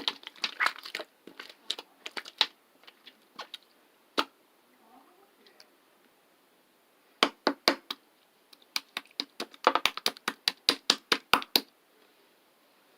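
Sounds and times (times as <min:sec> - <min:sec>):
slime clicking and popping: 0:00.0 - 0:02.5.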